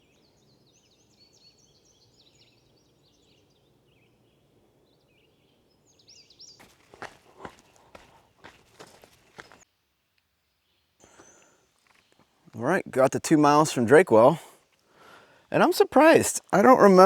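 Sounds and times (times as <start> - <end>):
faint birdsong chirps and trills: 0.0 - 9.7, 10.3 - 17.0
footsteps on a trail: 6.6 - 9.6.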